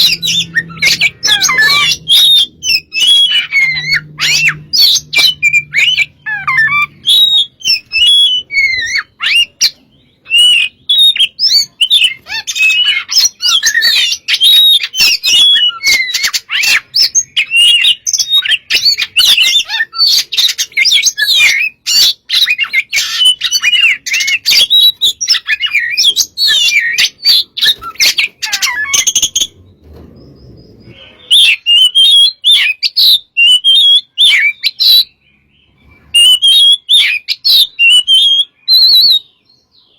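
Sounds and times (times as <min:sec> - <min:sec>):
songbird singing: 0:00.0 - 0:39.9.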